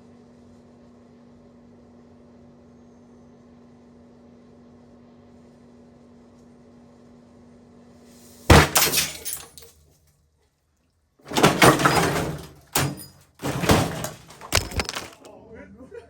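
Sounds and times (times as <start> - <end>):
microwave oven humming: 0.0 - 8.0
glass bottle bursting: 8.4 - 9.6
crashing and clattering: 8.4 - 9.7, 11.3 - 15.3.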